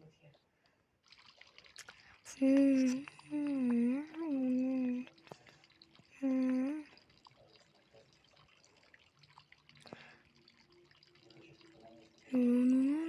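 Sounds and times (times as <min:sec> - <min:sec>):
tap water running and dripping: 0:00.0 - 0:13.0
person humming: 0:06.2 - 0:06.9, 0:12.3 - 0:13.0.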